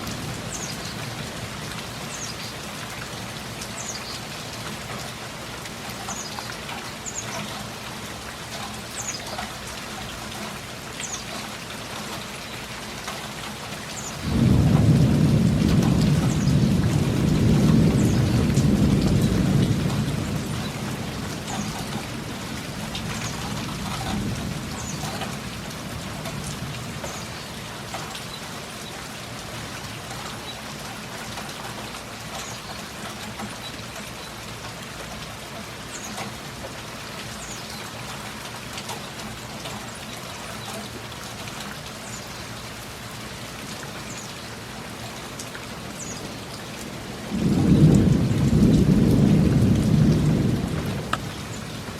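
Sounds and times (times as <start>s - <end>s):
heavy rain falling: 0.0s - 51.9s
raindrops ticking: 0.0s - 51.9s
thunder rumbling: 14.2s - 27.0s, 47.1s - 51.9s.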